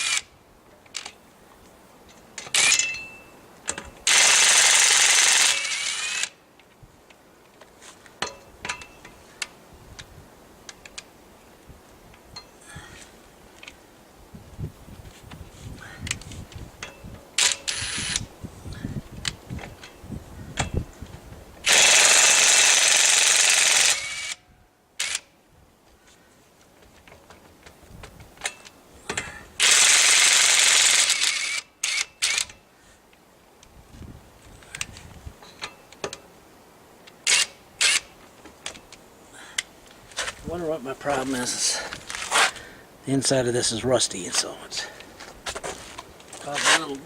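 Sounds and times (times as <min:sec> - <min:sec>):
tool blips and clicks: 0:16.8 - 0:18.3.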